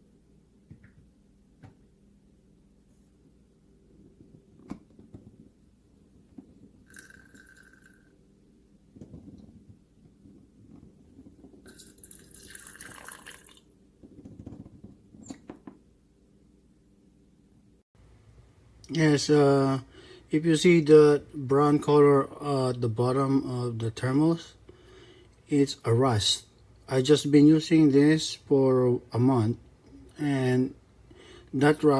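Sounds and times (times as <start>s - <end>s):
water pouring from hot water pot: 6.9s - 8.0s, 11.6s - 13.7s.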